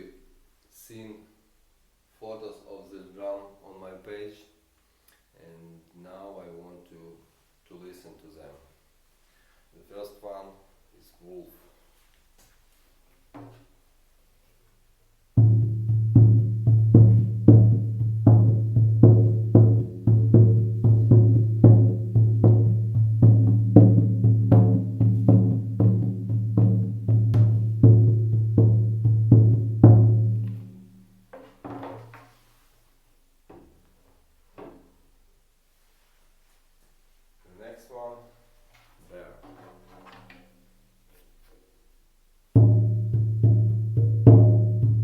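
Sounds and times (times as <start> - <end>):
frame drum booming beat: 15.4 - 30.9, 42.6 - 45.0.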